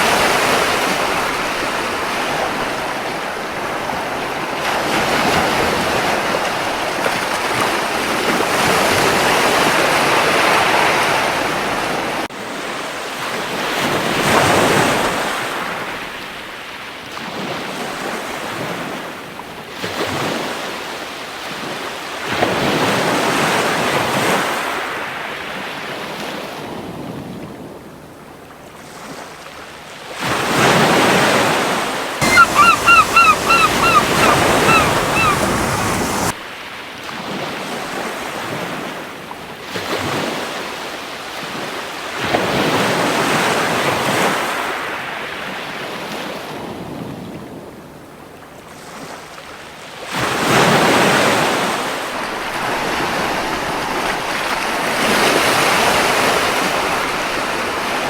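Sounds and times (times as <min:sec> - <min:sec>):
gull calling: 0:32.2 - 0:36.3
sea waves breaking on beach: 0:32.2 - 0:36.4.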